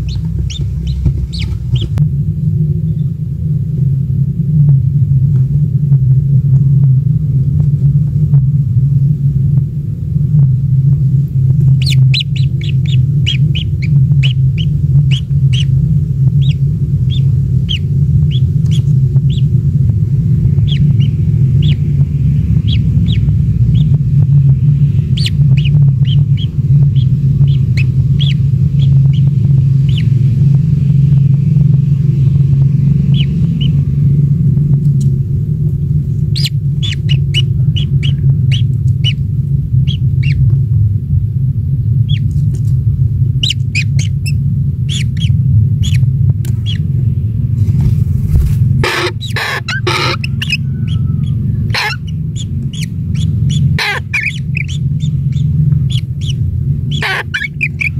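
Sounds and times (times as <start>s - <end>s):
bird chirping: 0.0s - 2.0s, 11.7s - 15.8s, 16.4s - 19.6s, 20.4s - 21.9s, 22.5s - 24.0s, 24.8s - 30.3s, 33.0s - 33.8s, 36.4s - 39.2s, 39.8s - 40.4s, 43.4s - 46.9s, 48.3s - 57.9s
loud steady low rumble: 0.0s - 57.9s.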